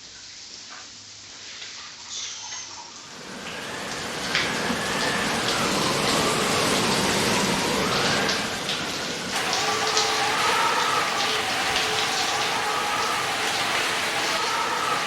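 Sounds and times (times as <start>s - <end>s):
water spraying from shower head: 3.0s - 15.0s.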